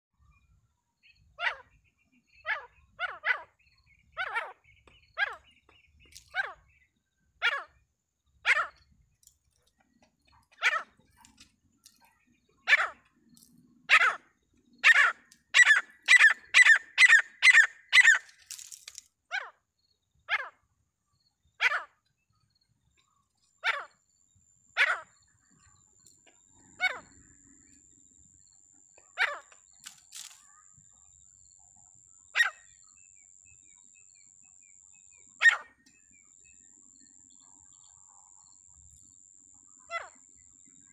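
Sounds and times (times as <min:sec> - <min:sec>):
francolin calling: 0:10.3 - 0:18.7, 0:24.8 - 0:40.9.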